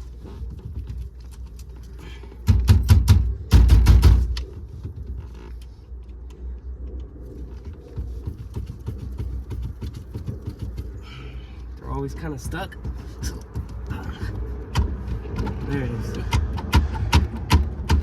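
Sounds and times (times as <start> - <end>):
rapid metallic knocking and rattling: 7.9 - 11.3, 12.1 - 18.0.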